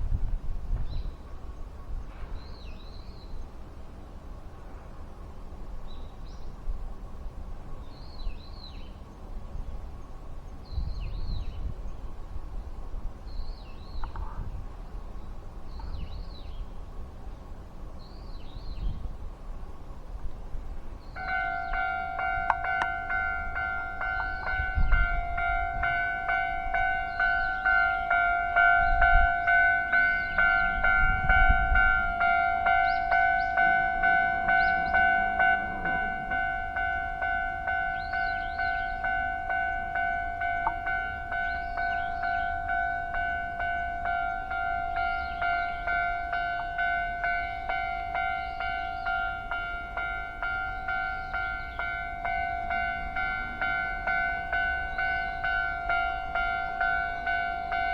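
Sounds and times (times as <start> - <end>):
level-crossing bell clanging: 21.2 - 57.9
bird calling: 32.1 - 57.9.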